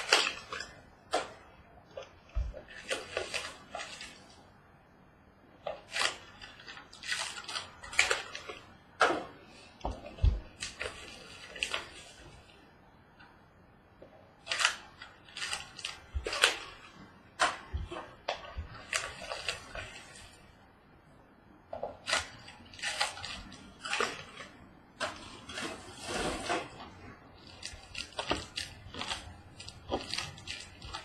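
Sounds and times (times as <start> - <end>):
packaging crinkling and tearing: 22.0 - 26.8, 27.4 - 31.0.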